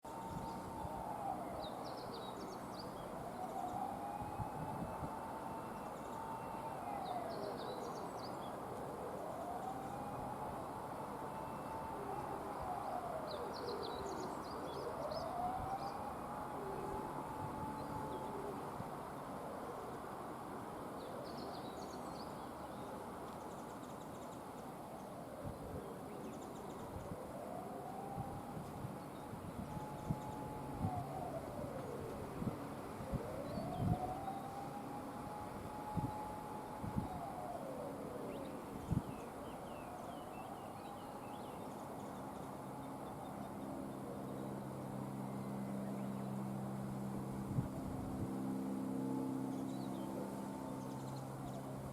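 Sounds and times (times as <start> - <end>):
high whine: 27.0 - 51.9.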